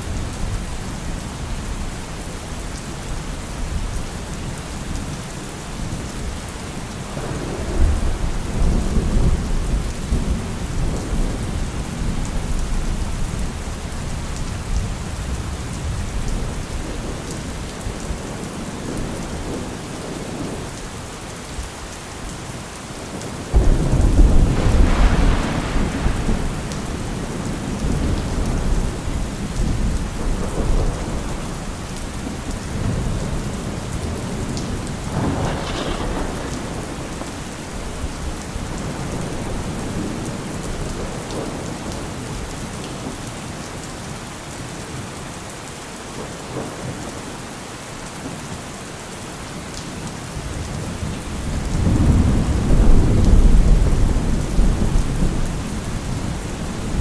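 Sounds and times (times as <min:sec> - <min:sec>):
steady rain: 0:00.0 - 0:57.0
loud thunderclap: 0:07.1 - 0:12.6, 0:23.5 - 0:41.6, 0:51.6 - 0:57.0
distant thunder rumbling: 0:07.1 - 0:20.6, 0:23.5 - 0:42.5, 0:51.0 - 0:57.0.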